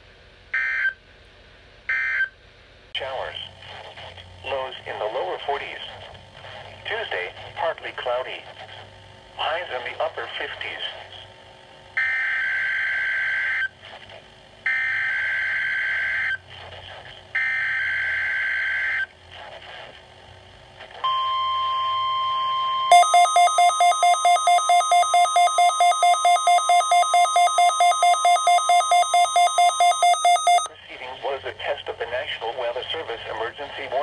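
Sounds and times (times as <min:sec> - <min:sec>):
fast alarm beeping: 0:21.1 - 0:30.7
steady warning alarm tone: 0:21.1 - 0:30.7
harsh digital data tones: 0:22.9 - 0:30.7.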